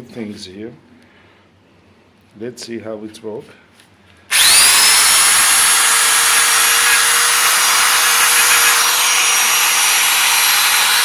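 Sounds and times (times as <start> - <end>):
electric drill motor whine: 4.3 - 11.0.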